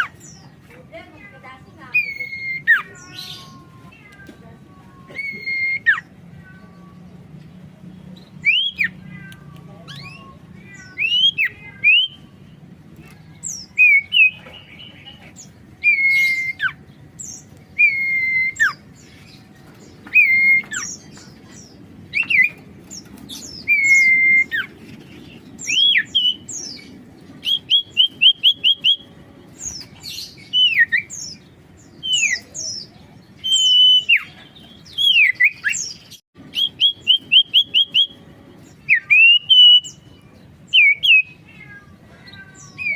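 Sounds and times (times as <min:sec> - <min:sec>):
bird singing whistled phrases: 0:01.9 - 0:03.6, 0:05.1 - 0:06.1, 0:08.4 - 0:09.0, 0:09.9 - 0:12.3, 0:13.5 - 0:14.9, 0:15.8 - 0:18.8, 0:20.0 - 0:21.0, 0:23.4 - 0:24.7, 0:25.6 - 0:26.8, 0:27.4 - 0:31.4, 0:32.0 - 0:38.2, 0:38.8 - 0:40.1, 0:40.7 - 0:41.4.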